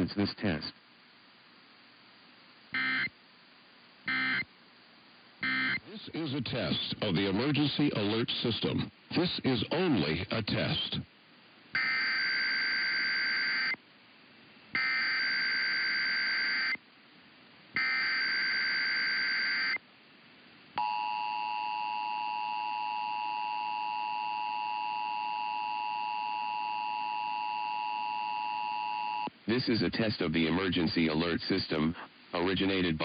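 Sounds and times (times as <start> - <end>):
digital header data bursts: 4.1 - 4.5, 5.4 - 7.5.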